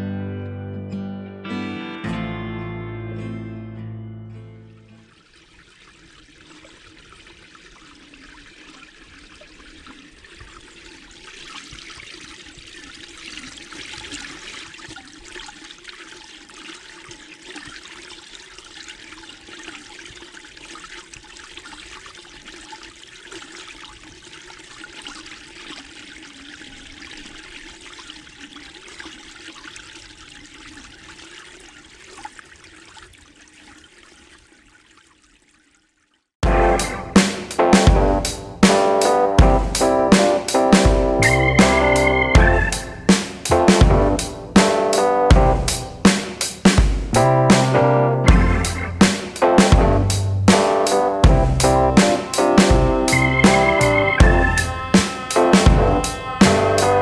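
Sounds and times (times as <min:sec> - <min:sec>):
stream flowing: 0:04.6 - 0:35.7.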